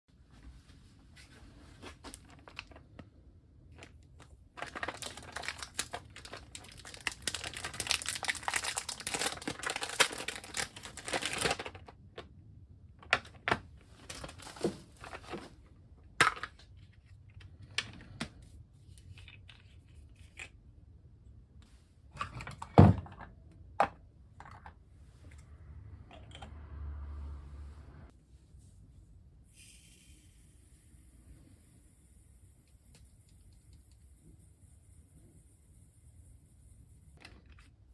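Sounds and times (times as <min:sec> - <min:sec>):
crinkling and crumpling: 0:01.2 - 0:03.1, 0:03.7 - 0:12.3, 0:13.0 - 0:15.7.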